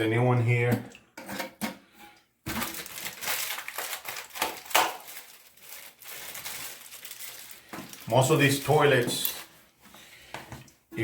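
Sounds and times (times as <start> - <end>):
plastic packaging crinkling: 2.5 - 9.6.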